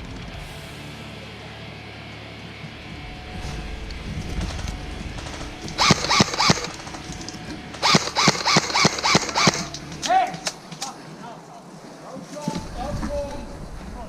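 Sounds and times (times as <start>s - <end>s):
airsoft gun shots: 5.7s - 6.9s, 7.8s - 10.6s.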